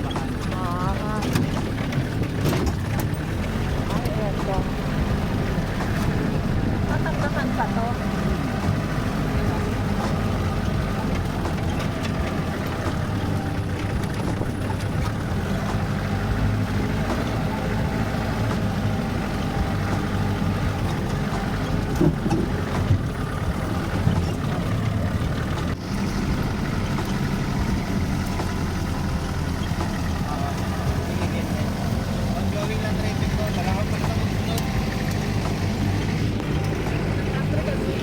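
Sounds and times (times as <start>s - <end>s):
road noise: 0.0s - 38.0s
vehicle engine running: 0.0s - 38.0s.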